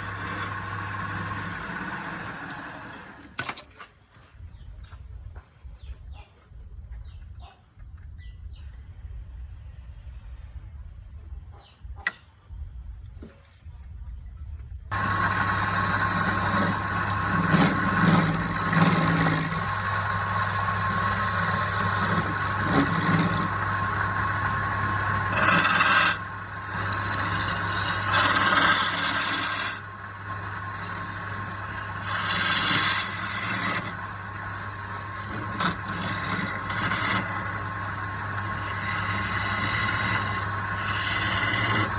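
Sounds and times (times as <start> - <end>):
woodworking machine humming: 0.0 - 3.4, 14.9 - 41.9
tool scraping wood: 0.0 - 3.9, 14.9 - 41.9.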